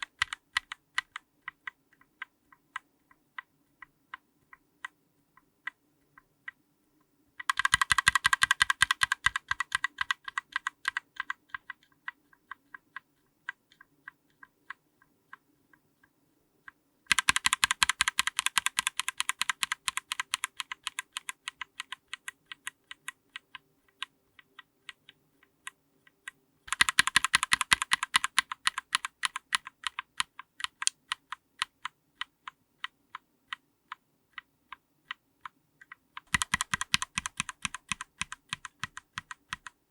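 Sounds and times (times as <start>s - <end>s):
mechanical keyboard keystrokes: 0.0s - 3.5s, 7.4s - 14.8s, 17.1s - 25.2s, 26.7s - 33.6s, 35.1s - 39.8s.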